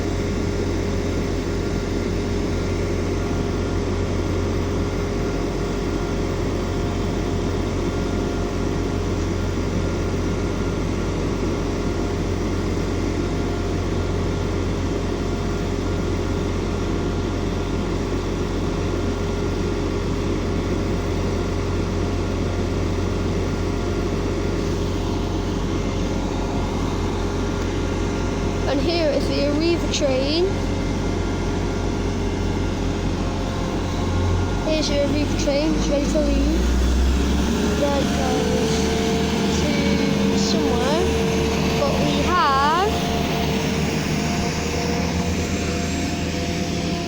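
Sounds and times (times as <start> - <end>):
train diesel engine idling: 0.0 - 47.0.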